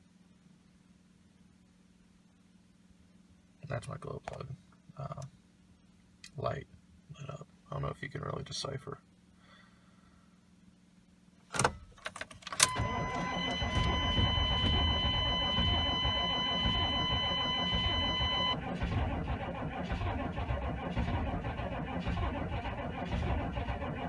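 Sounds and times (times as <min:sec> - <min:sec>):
dash warning tone: 0:12.6 - 0:18.6
engine cranking rumble: 0:12.6 - 0:24.0.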